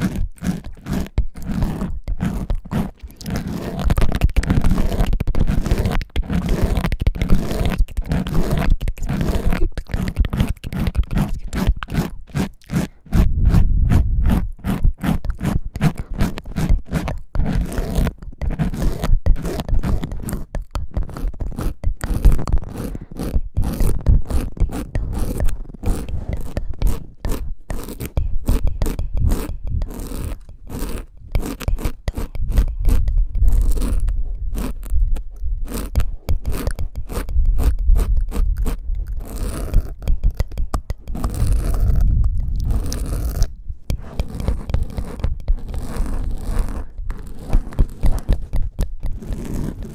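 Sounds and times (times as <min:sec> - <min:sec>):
ear pick scraping: 0:00.0 - 0:49.9
deep rumble: 0:41.2 - 0:43.8.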